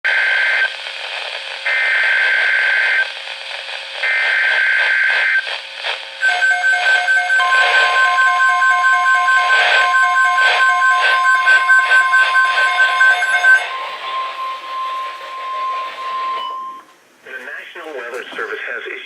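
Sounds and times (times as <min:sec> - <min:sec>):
radio static: 0:00.4 - 0:16.4, 0:17.2 - 0:19.0
screeching digital data bursts: 0:06.2 - 0:16.8
pulsing beeping alarm: 0:06.2 - 0:16.9
steady warning tone: 0:06.2 - 0:17.0.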